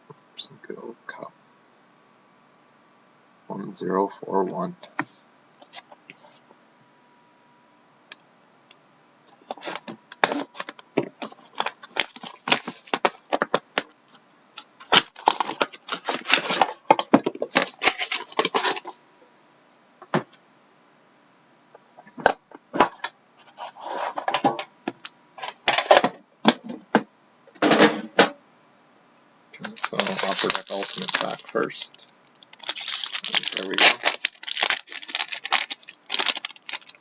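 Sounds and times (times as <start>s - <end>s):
paper and plastic wrapping crinkling: 9.5s - 13.6s, 14.8s - 19.0s, 29.6s - 37.0s.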